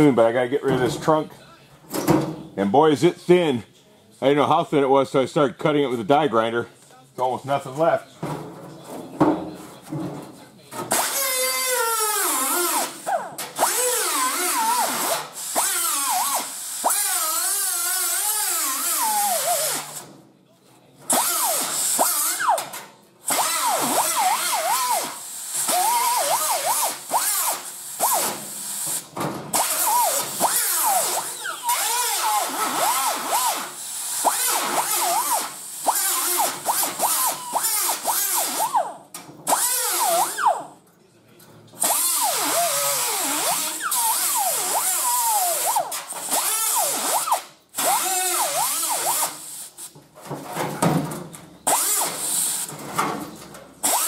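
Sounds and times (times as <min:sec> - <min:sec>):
die grinder cutting sheet steel: 0:10.9 - 0:20.0, 0:23.3 - 0:38.8, 0:39.5 - 0:40.6, 0:41.8 - 0:49.5, 0:51.7 - 0:52.7.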